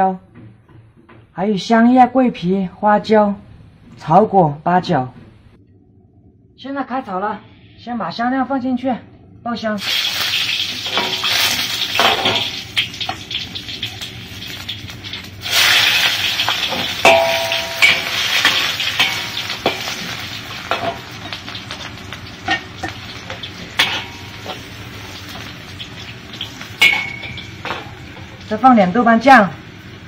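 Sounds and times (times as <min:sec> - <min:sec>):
spices sizzling in hot oil: 0:09.8 - 0:30.0.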